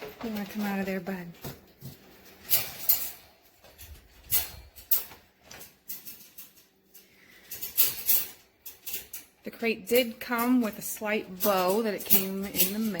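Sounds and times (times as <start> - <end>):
dog scuffing in wire crate: 0.0 - 6.6.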